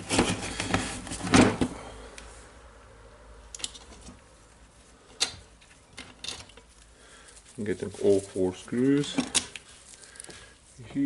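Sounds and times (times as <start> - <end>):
metal parts clattering: 5.9 - 6.6, 8.8 - 10.3.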